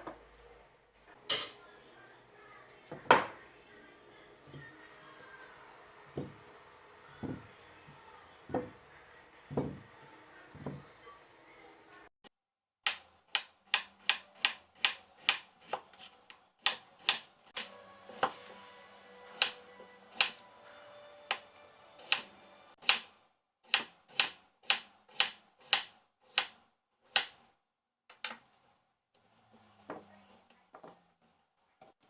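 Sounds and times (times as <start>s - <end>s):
knife chopping on cutting board: 12.8s - 18.5s, 23.7s - 27.4s.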